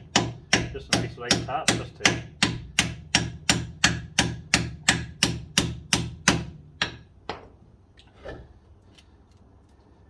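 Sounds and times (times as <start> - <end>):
hammer tapping metal hub: 0.0 - 7.4.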